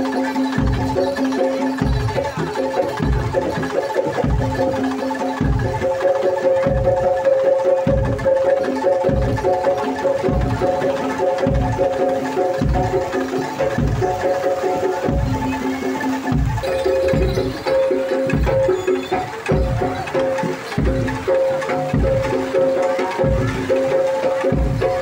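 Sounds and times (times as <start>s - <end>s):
deep drum strokes: 0.0s - 25.0s
metal mallet percussion ringing: 0.0s - 25.0s.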